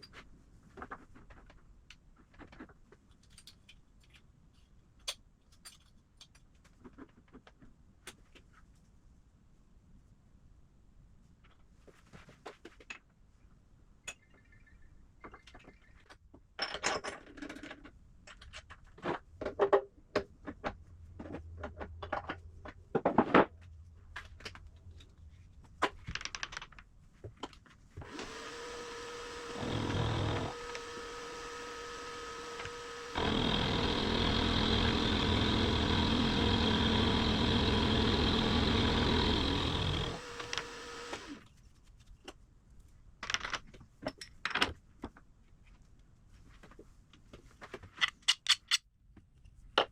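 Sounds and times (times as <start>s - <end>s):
electric machine tool humming: 28.0s - 41.4s.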